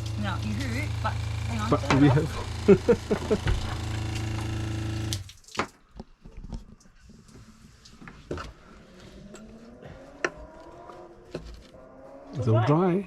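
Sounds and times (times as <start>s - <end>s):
water filling a container: 1.5s - 5.8s
hands knocking on plastic plumbing: 3.0s - 3.9s.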